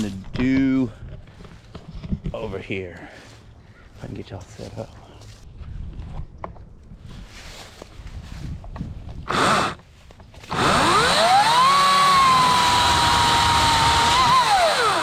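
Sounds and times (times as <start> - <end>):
electric chainsaw motor whining: 9.3 - 9.8, 10.4 - 15.0.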